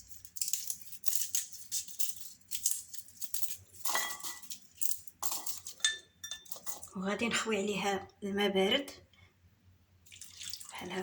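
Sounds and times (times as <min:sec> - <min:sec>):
dry garlic skins crackling: 0:00.0 - 0:05.8.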